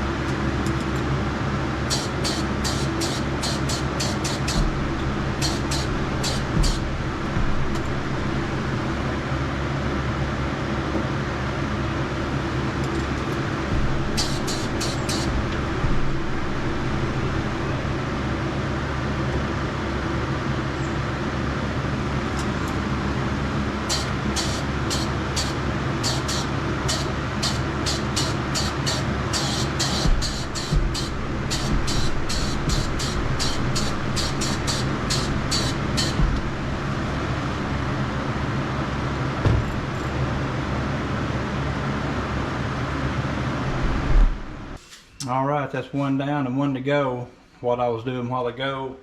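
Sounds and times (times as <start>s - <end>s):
exhaust fan droning: 0.0s - 48.8s
short sharp hissy pulses: 1.9s - 8.6s, 13.8s - 17.8s, 23.9s - 38.2s.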